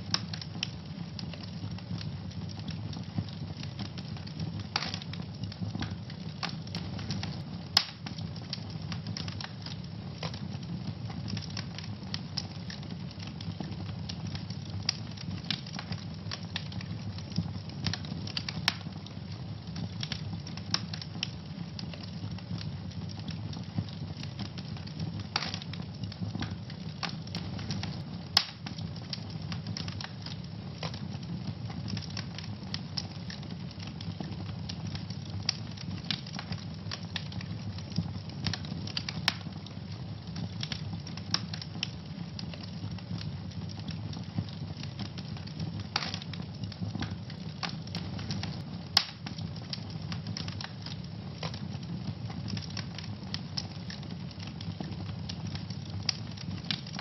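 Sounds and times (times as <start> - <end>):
sharp pops of fire: 0.0 - 10.4, 23.3 - 39.6, 40.4 - 57.0
low rumble of flames: 0.0 - 57.0
wood fire crackling: 0.0 - 57.0.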